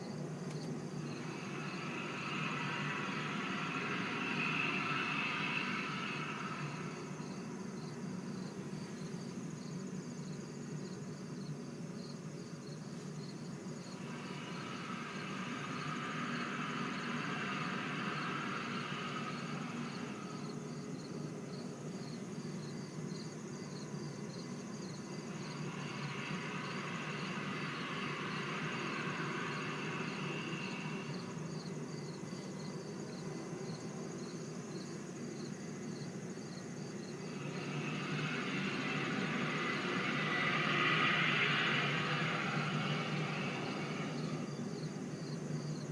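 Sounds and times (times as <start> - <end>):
hissing sound: 0.0 - 9.1, 13.4 - 22.3, 24.6 - 33.7, 37.1 - 45.5
crickets chirping: 0.0 - 45.9
low background rumble: 0.0 - 45.9.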